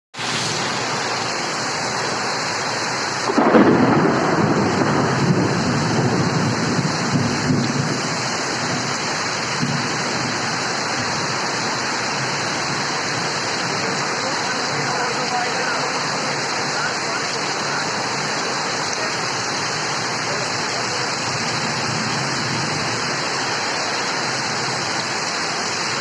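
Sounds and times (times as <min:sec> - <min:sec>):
heavy rain falling: 0:00.1 - 0:26.0
thunder clap and rumble: 0:03.2 - 0:11.2.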